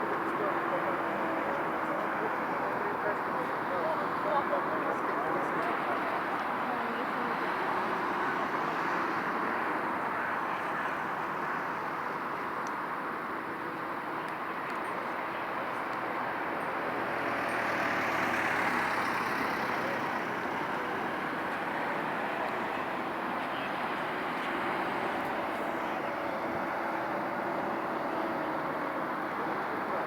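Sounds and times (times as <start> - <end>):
traffic rushing: 0.0 - 30.0.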